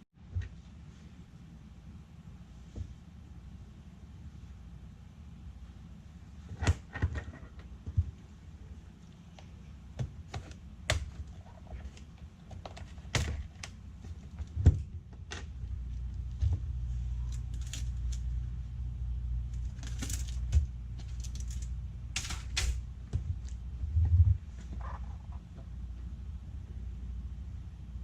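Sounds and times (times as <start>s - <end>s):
low steady hum: 0.0s - 28.0s.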